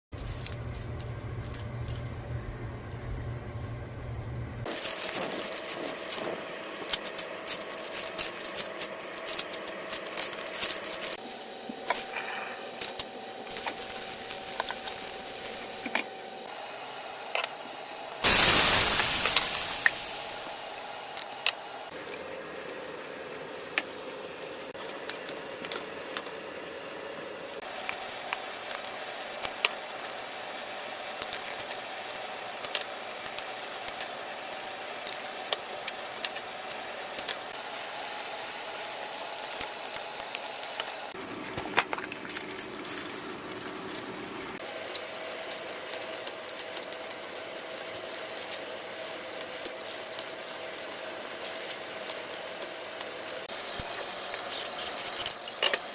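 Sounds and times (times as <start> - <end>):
steady hum: 0.2 - 24.8
sharp clicks and crackles: 44.8 - 48.6.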